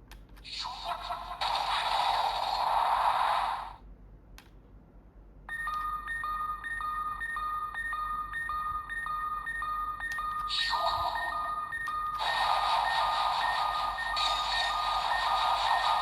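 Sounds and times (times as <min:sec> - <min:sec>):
two-note electronic beeps: 0:05.5 - 0:16.0.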